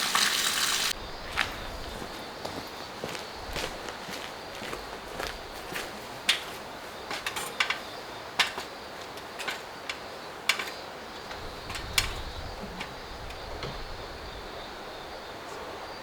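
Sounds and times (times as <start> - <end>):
sharp knocks and clicks: 7.2 - 12.4.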